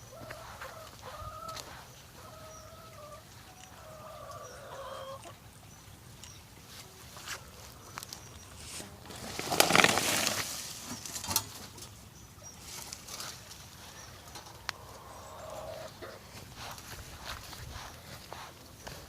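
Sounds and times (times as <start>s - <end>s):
chickens pecking: 0.0s - 5.4s, 6.8s - 12.0s, 12.7s - 19.0s
rustling flurry: 8.6s - 11.3s.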